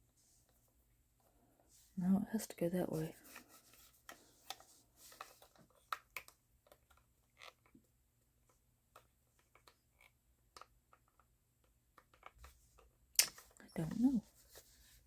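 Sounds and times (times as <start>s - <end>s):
plastic parts clicking and tapping: 4.0s - 13.6s.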